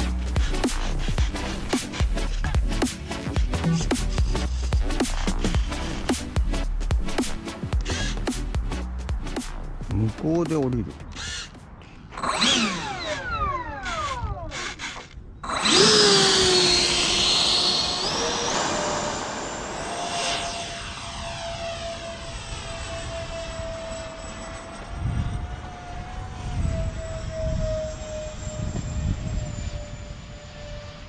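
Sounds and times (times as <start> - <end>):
low rumbling thumps: 0.0 - 11.3
electric ducted fans whining: 15.6 - 31.0.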